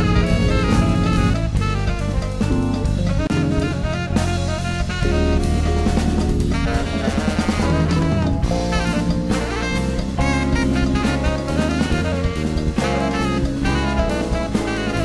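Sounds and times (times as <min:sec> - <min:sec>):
sustained melodic notes: 0:00.0 - 0:11.8
drum kit steady beat: 0:00.0 - 0:15.0.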